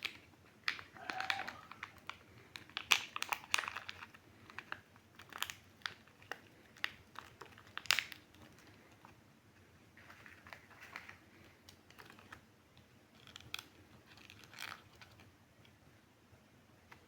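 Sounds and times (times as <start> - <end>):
plastic toy pieces clicking: 0.0 - 8.8, 13.2 - 15.2
packaging rustling: 0.0 - 9.2.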